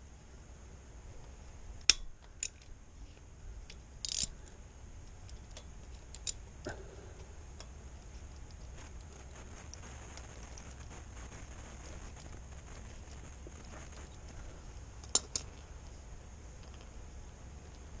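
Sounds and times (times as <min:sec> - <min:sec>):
metal tool clicks and taps: 0:01.8 - 0:02.7, 0:03.7 - 0:04.4, 0:05.2 - 0:06.4.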